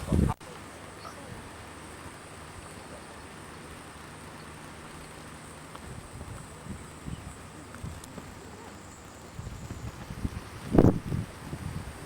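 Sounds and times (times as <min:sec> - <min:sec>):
wind buffeting microphone: 0:00.0 - 0:00.4, 0:03.4 - 0:12.0
steady hiss: 0:00.0 - 0:12.0.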